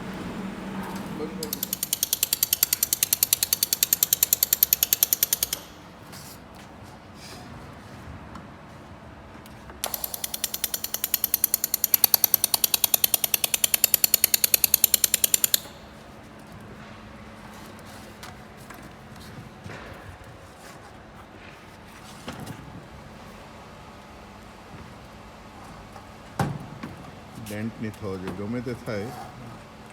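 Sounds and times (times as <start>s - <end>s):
laser welder sharp ticks: 1.4s - 5.8s, 9.8s - 15.9s.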